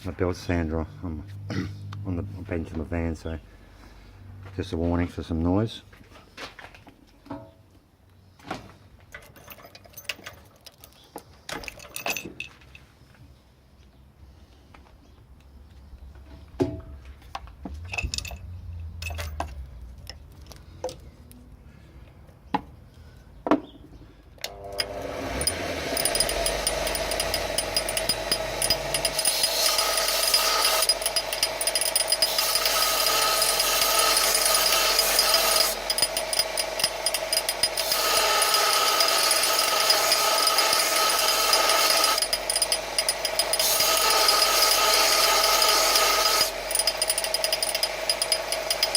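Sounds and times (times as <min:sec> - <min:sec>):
sharp clicks and knocks: 0:24.4 - 0:44.7, 0:45.4 - 0:48.9
belt sander whining: 0:24.4 - 0:48.9
metal grinding against sander belt: 0:24.5 - 0:48.9.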